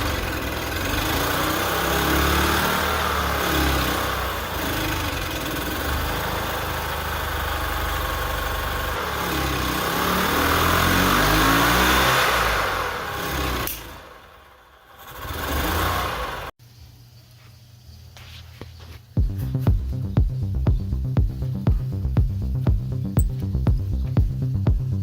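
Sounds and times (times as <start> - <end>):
golf cart engine running: 0.0 - 16.5.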